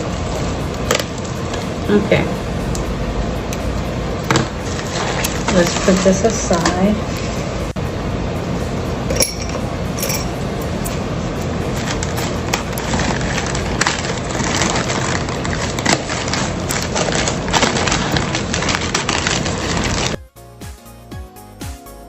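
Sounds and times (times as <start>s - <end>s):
plastic packaging crinkling: 11.6s - 20.2s.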